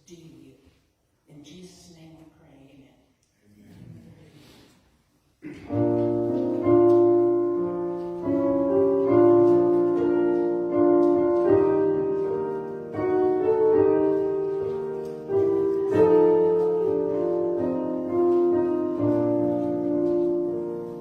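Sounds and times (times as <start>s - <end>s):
slow hymn-like piano chords: 5.6s - 21.0s.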